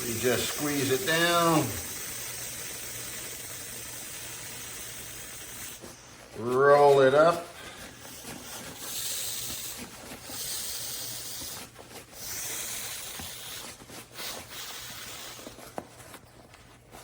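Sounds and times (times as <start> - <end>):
air hissing out of valve: 0.0 - 6.1, 8.4 - 11.6, 12.2 - 15.6.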